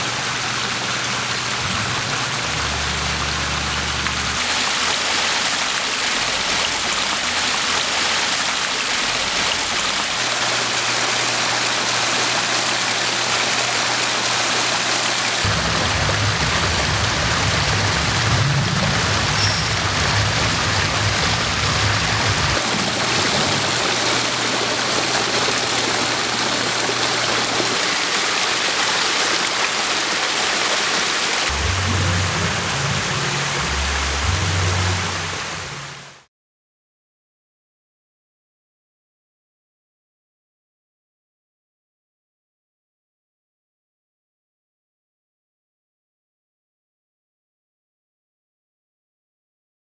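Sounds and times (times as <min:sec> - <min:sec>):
waterfall rushing into pond: 0:00.0 - 0:36.3.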